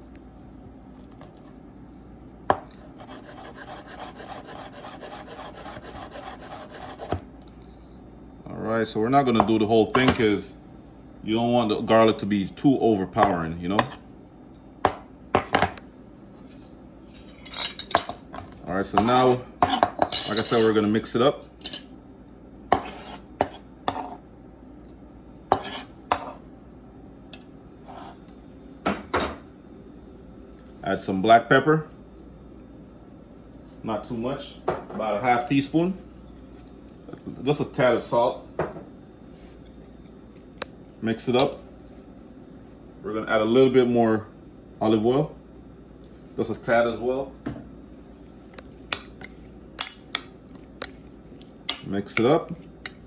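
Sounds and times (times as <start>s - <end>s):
utensil scraping against a bowl: 2.9s - 7.2s, 22.8s - 24.2s, 25.5s - 26.4s
garlic grated on fine grater: 3.0s - 7.1s.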